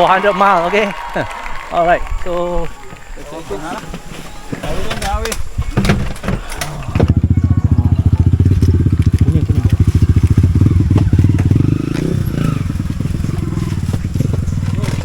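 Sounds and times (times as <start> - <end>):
small engine running: 7.0 - 15.0.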